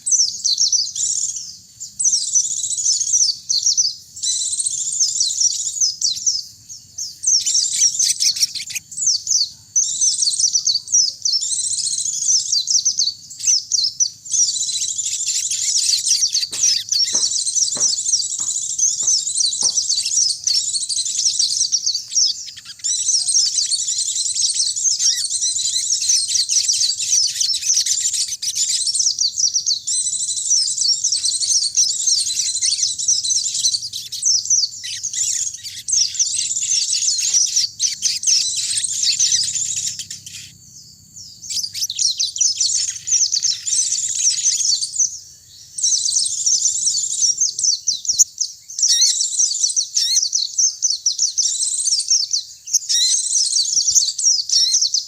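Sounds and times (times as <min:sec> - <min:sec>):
birds twittering song: 0:00.0 - 0:55.0.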